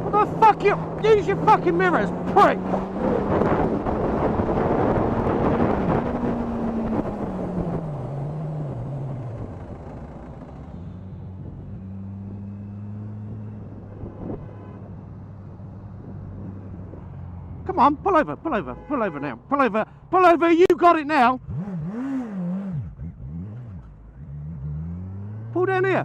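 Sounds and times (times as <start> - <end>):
wind rush: 0.6 - 8.0.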